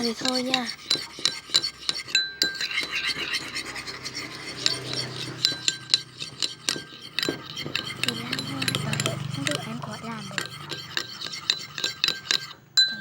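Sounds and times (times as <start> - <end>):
spoon stirring thick paste: 0.0 - 13.0.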